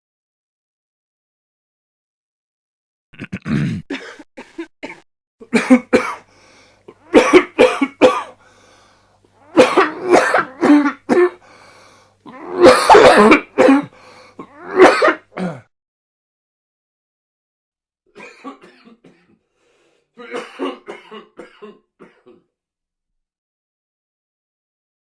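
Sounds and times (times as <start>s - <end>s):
person coughing: 3.2s - 6.2s, 6.9s - 8.4s, 9.6s - 11.4s, 12.6s - 15.7s, 18.2s - 19.4s, 20.2s - 22.5s.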